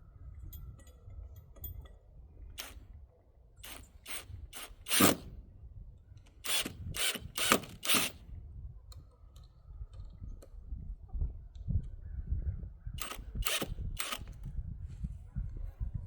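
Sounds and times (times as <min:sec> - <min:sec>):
tool working in noisy bursts: 0:02.6 - 0:02.8, 0:03.6 - 0:05.3, 0:06.4 - 0:08.2, 0:13.0 - 0:14.4.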